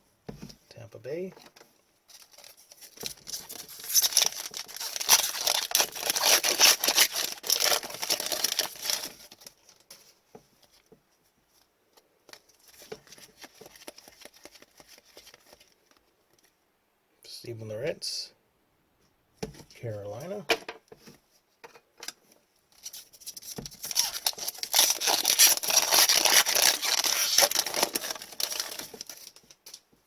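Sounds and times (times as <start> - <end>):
foil wrapper crinkling and tearing: 2.1 - 9.8, 22.8 - 29.8.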